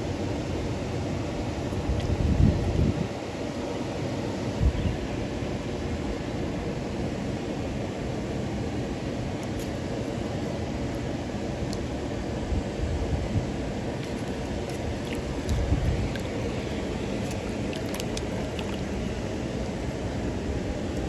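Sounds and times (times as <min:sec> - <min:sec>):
wind buffeting microphone: 0:01.7 - 0:03.2, 0:12.5 - 0:19.2
creek water rushing: 0:13.7 - 0:21.0.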